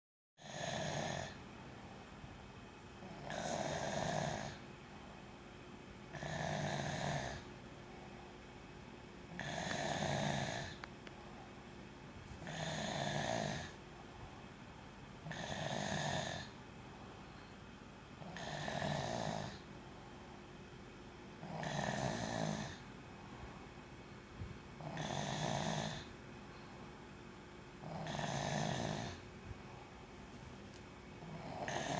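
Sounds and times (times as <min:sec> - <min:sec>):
person snoring: 0:00.4 - 0:01.4, 0:03.0 - 0:04.6, 0:06.1 - 0:07.5, 0:09.3 - 0:10.8, 0:12.4 - 0:13.8, 0:15.2 - 0:16.6, 0:18.2 - 0:19.7, 0:21.4 - 0:22.8, 0:24.8 - 0:26.1, 0:27.8 - 0:29.2, 0:31.2 - 0:31.9.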